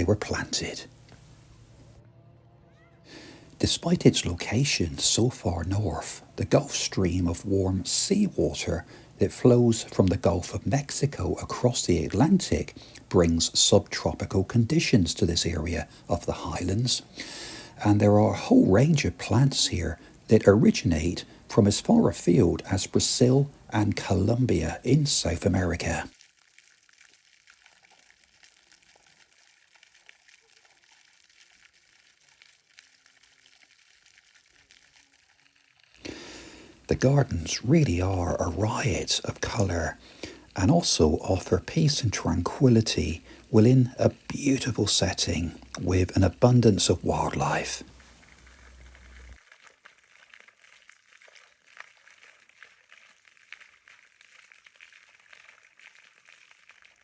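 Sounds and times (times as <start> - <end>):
faint steady hiss: 0.0 - 26.2, 35.5 - 49.4
low hum: 1.4 - 3.0.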